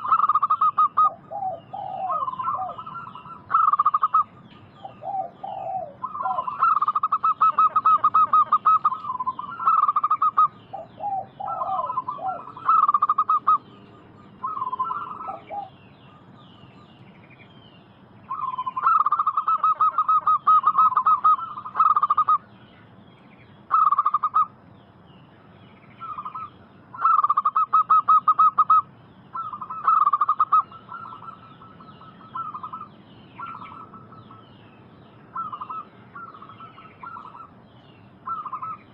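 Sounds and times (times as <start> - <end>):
doves cooing: 0.0 - 16.7, 18.3 - 22.5, 23.7 - 24.6, 26.0 - 34.5, 35.2 - 38.9
faint high bird chirping: 0.0 - 38.9.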